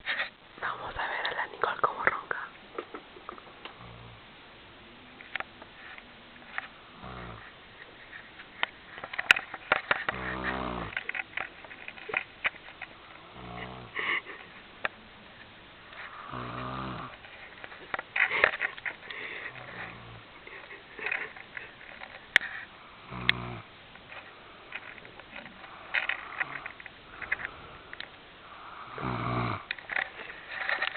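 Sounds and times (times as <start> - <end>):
woman snoring: 3.8 - 4.2, 6.9 - 7.4, 10.1 - 11.0, 13.2 - 14.1, 16.1 - 17.2, 19.2 - 20.3, 23.0 - 23.7, 28.5 - 29.7.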